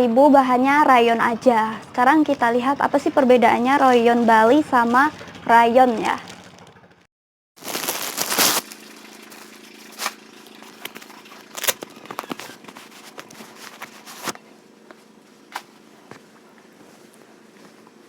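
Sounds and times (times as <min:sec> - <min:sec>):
plastic packaging crinkling: 0:07.6 - 0:14.4.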